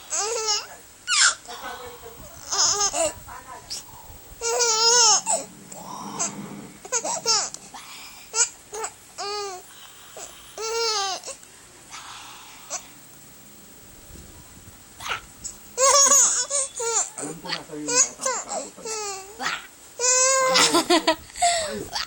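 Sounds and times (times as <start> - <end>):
baby squealing and cooing: 3.7 - 5.6.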